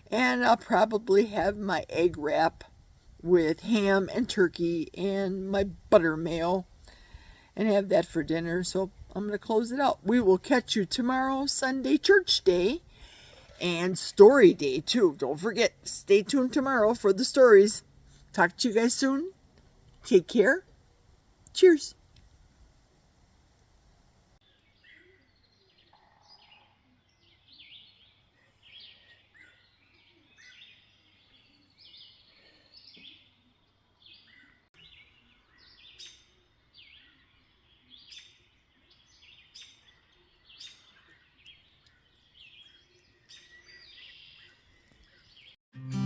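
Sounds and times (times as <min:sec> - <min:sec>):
small birds chirping: 0:24.4 - 0:45.6.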